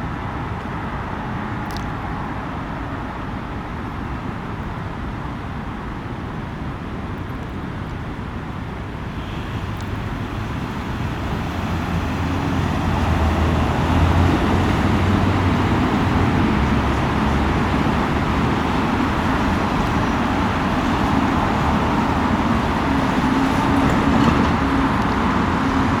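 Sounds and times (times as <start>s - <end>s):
street traffic: 0.0s - 26.0s
heavy engine rumbling: 9.1s - 26.0s.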